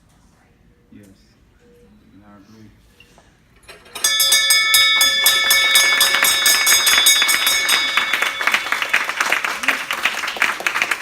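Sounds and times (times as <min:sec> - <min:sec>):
ship's bell ringing: 0:03.9 - 0:09.8
people clapping: 0:04.9 - 0:11.0.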